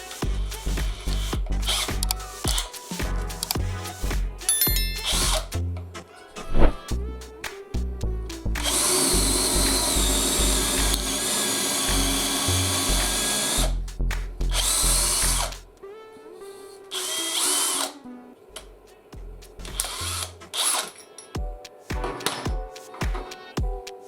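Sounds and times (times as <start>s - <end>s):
background music with steady beat: 0.0s - 24.0s
cordless drill motor running: 8.6s - 13.8s, 14.5s - 15.5s, 16.9s - 17.9s.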